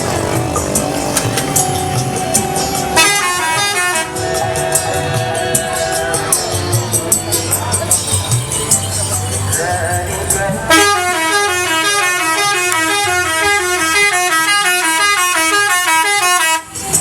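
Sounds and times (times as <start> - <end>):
air horn playing jingle: 2.9 - 4.6, 10.7 - 16.8.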